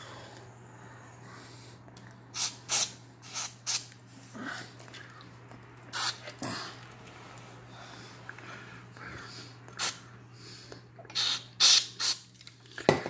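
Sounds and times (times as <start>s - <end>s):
aerosol spray hissing: 2.4s - 3.9s, 5.9s - 6.2s, 11.2s - 12.2s.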